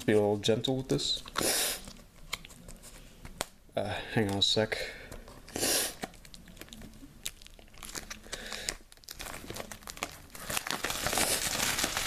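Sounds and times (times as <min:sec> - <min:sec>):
plastic wrapping tearing and crinkling: 0:06.0 - 0:12.0.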